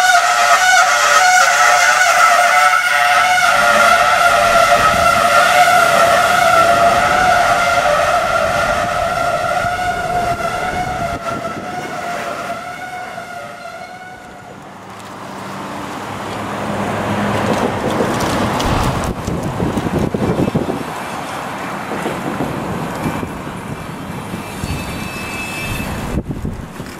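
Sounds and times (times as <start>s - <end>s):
locomotive air horn blast: 0.0s - 14.7s
diesel engine: 0.0s - 26.9s
wind on microphone: 3.3s - 13.4s, 18.1s - 25.0s, 25.6s - 26.9s.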